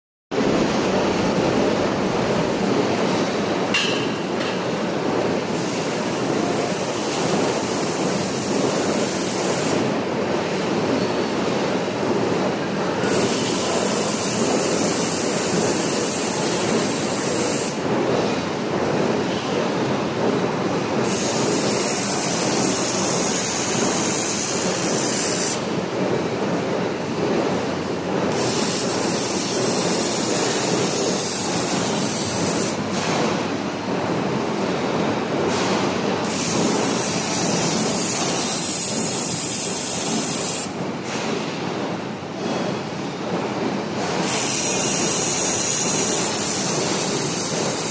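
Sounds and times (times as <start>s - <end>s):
industrial machinery running: 0.3s - 47.9s.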